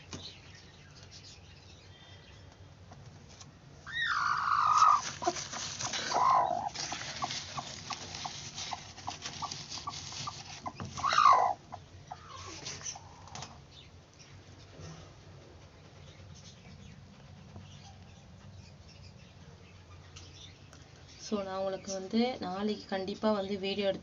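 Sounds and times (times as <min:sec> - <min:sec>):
hen calling: 0:03.9 - 0:13.4.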